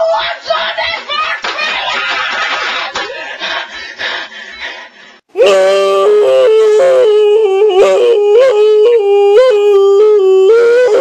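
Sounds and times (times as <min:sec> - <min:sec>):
person wailing with yodel flips: 0:05.4 - 0:11.0.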